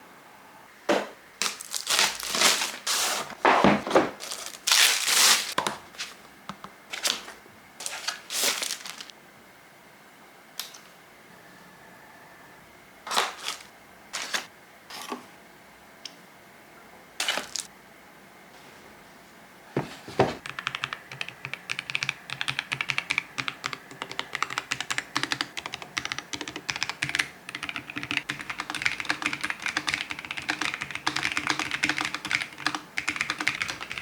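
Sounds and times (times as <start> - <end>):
packaging rustling and crinkling: 1.4 - 6.2, 6.9 - 9.1, 13.1 - 14.5, 17.2 - 17.7.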